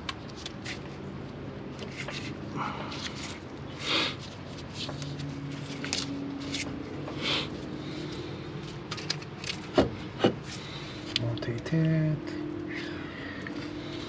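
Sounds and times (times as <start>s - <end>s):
hands handling brake parts: 8.0s - 11.7s.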